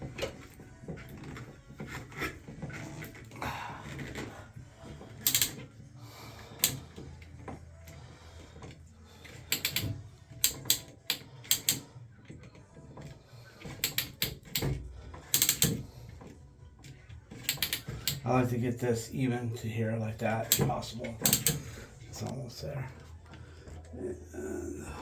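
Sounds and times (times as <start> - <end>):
clicks of hand tools and parts: 4.9 - 5.8, 6.6 - 18.3, 20.4 - 23.9.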